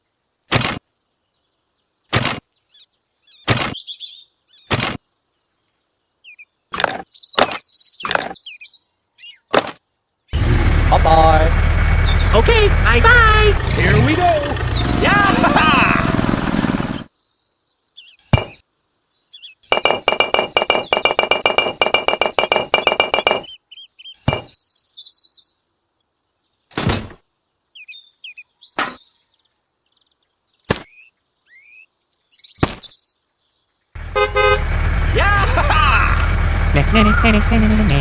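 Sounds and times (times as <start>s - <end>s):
sharp knocks: 18.3s - 18.6s, 19.7s - 23.5s, 24.3s - 24.6s.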